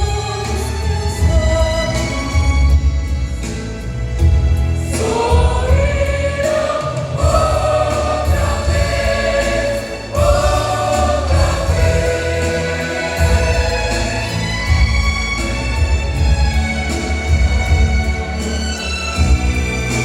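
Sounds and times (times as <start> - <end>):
gospel group singing in harmony: 0.0 - 20.0
heavy bass accompaniment: 0.0 - 20.0.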